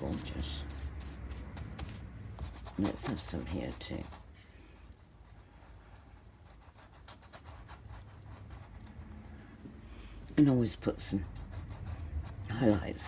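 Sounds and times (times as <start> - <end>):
paintbrush strokes on canvas: 0.0 - 9.4.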